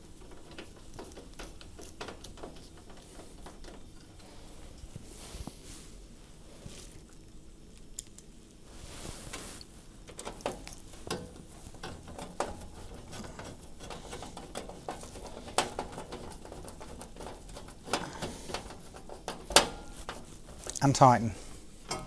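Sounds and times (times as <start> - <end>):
small metal parts clicking: 10.1 - 20.8.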